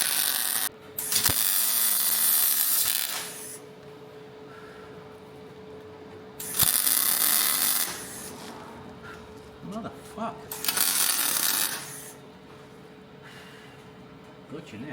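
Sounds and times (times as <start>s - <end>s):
welder arc crackling and sizzling: 0.0s - 3.8s, 6.3s - 12.3s
steady low hum: 0.0s - 14.9s.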